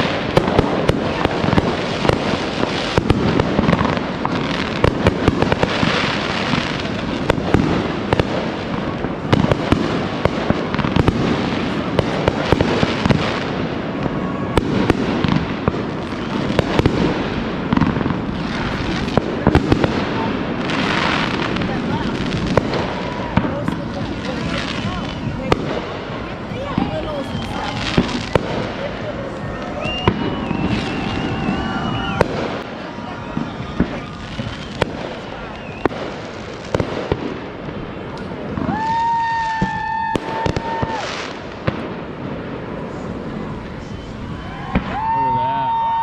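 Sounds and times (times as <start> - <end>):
fireworks crackling and popping: 0.0 - 46.0
loud firework bangs: 0.0 - 46.0.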